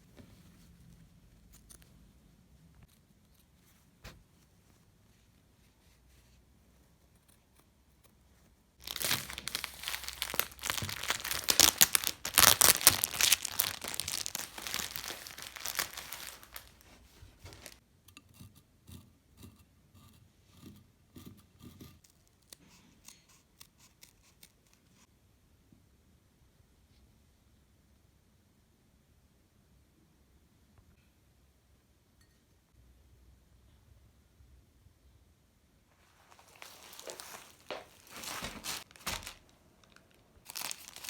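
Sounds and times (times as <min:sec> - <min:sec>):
packaging rustling: 0:08.8 - 0:17.8, 0:36.0 - 0:41.0
packaging tearing and crinkling: 0:08.8 - 0:17.8, 0:36.3 - 0:41.0.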